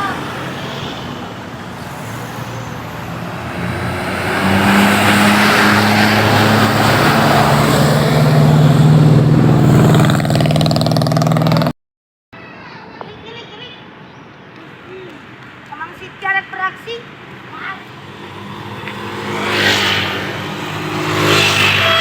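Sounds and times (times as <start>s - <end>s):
bus diesel engine pulling away: 0.0s - 11.7s.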